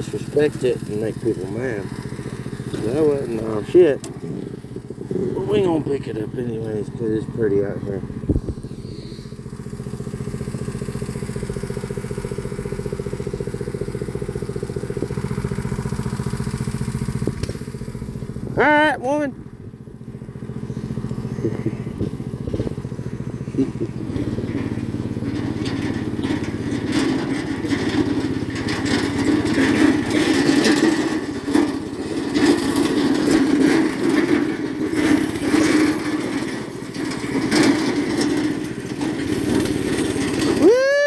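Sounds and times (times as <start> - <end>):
small engine running: 0.0 - 41.0
knocks and rattles: 21.4 - 40.8.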